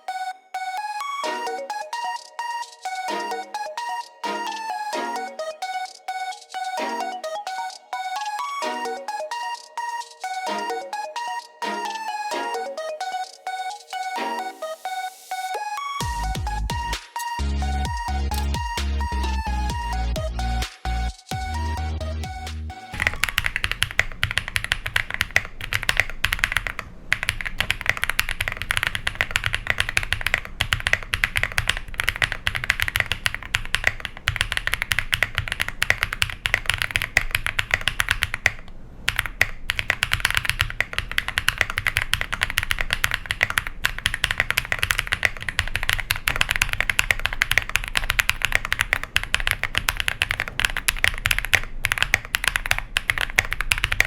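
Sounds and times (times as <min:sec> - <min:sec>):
mechanical keyboard typing: 0:23.0 - 0:54.0.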